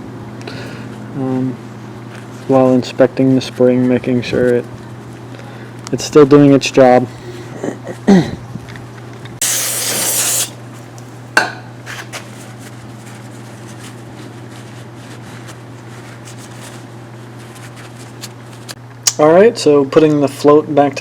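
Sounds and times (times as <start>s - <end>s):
steady low hum: 0.0s - 21.0s
aerosol spray hiss: 9.4s - 10.6s.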